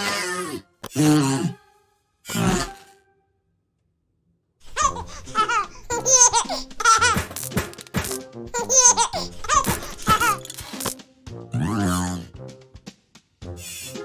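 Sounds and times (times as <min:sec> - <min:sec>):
background music: 0:00.0 - 0:03.4, 0:04.6 - 0:14.0
cartoon baby laughing: 0:02.3 - 0:02.7, 0:04.6 - 0:11.0, 0:11.6 - 0:12.3.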